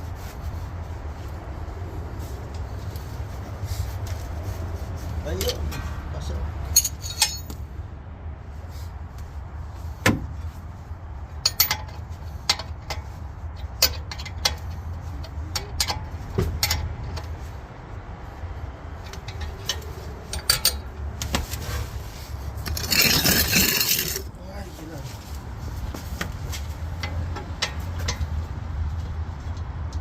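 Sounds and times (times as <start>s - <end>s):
metal hand tools clinking: 6.8s - 7.6s, 22.6s - 24.3s.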